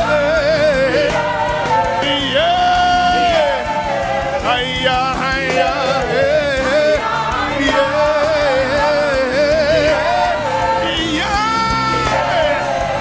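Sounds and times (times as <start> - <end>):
band playing gospel music: 0.0 - 13.0.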